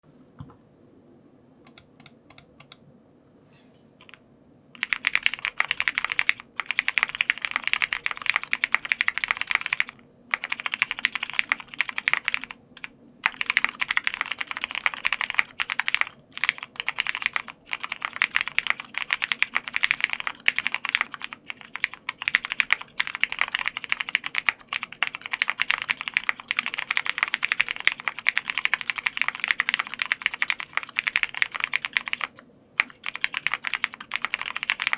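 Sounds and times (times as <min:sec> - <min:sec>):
typing on mechanical keyboard: 0:04.8 - 0:34.9.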